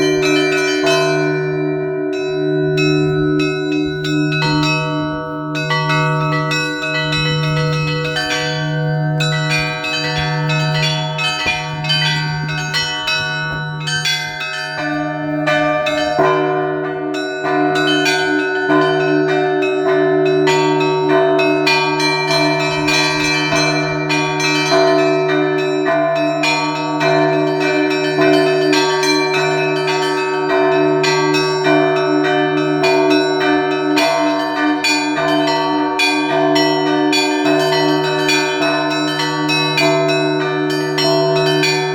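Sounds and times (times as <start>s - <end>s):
low heavy bell: 0.0s - 41.9s
middle bells ringing: 0.0s - 41.9s
small bells ringing quick patterns: 2.8s - 15.0s.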